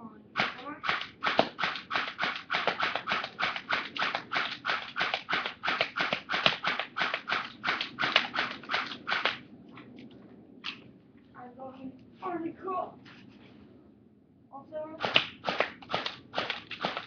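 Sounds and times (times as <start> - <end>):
airsoft rifle shots: 0.4 - 9.5, 15.0 - 17.0.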